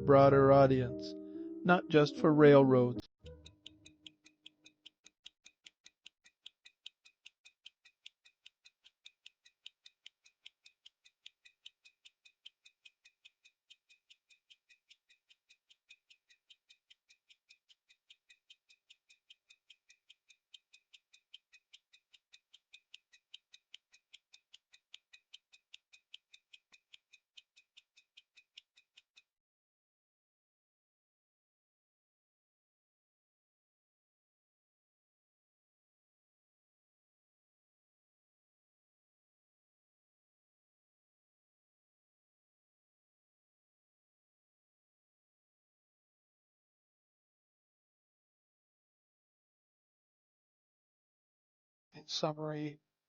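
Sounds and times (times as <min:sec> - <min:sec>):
pocket watch ticking: 0:03.3 - 0:29.4.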